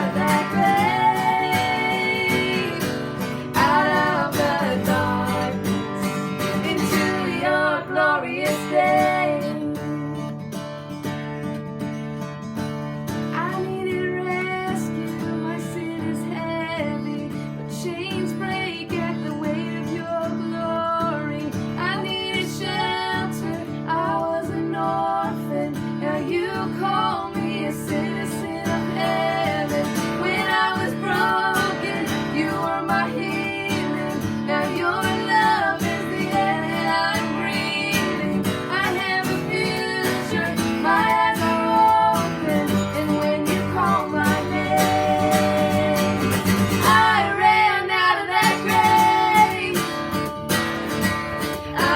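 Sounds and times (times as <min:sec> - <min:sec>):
person singing: 0:00.0 - 0:10.1, 0:13.4 - 0:50.3, 0:51.7 - 0:51.9
strummed acoustic guitar: 0:00.0 - 0:51.9.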